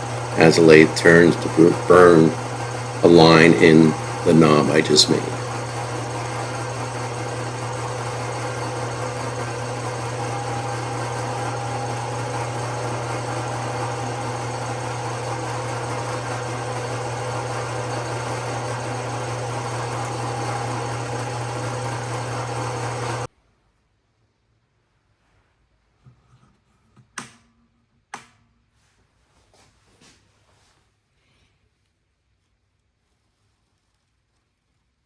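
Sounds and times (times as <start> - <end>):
wood lathe motor hum: 0.0 - 23.3.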